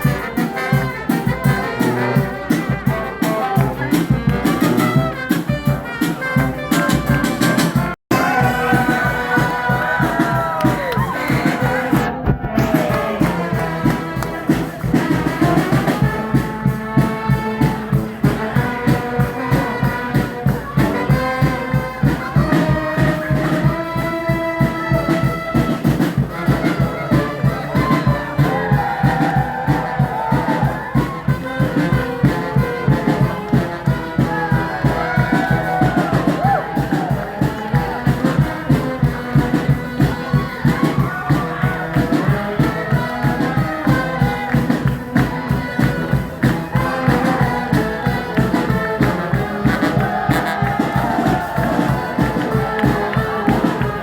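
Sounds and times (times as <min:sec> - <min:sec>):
brass horns playing: 0:00.0 - 0:54.0
steady drum beat: 0:00.0 - 0:54.0.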